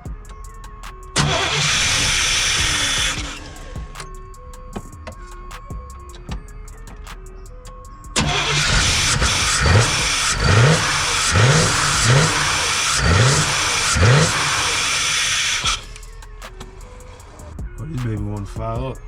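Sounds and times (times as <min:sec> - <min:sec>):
engine cranked by starter: 0:01.2 - 0:04.0, 0:08.2 - 0:17.5.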